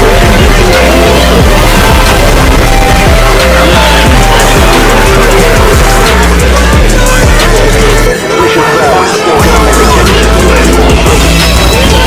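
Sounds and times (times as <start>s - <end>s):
heavy bass hits: 0.0s - 8.1s
overlapping music and sound effects: 0.0s - 12.0s.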